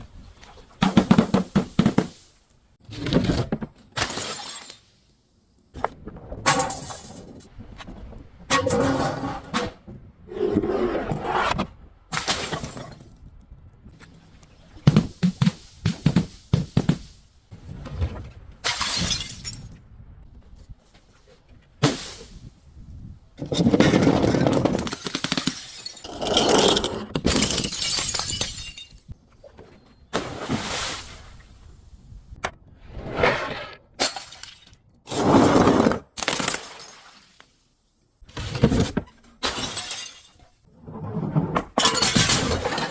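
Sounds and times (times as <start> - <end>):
glass bottles crushed and shattering: 4.0 - 4.9, 18.6 - 19.7, 23.5 - 29.1, 39.4 - 40.5, 41.8 - 42.9.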